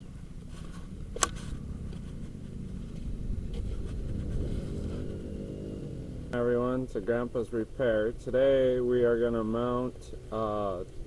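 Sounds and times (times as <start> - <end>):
engine running steadily: 0.0 - 11.0
sharp click: 1.1 - 1.4.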